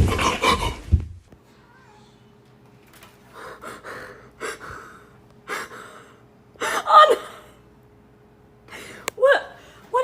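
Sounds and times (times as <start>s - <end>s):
person gasping: 0.0s - 0.9s.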